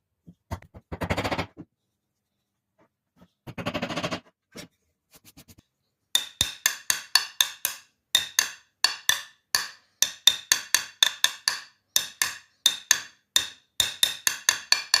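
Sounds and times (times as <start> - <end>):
wood pieces knocking: 6.2 - 15.0.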